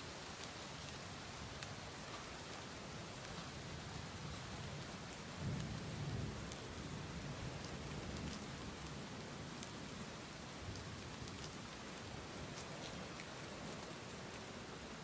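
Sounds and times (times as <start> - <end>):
steady rain: 0.0 - 15.0
low rumble of thunder: 5.3 - 9.2.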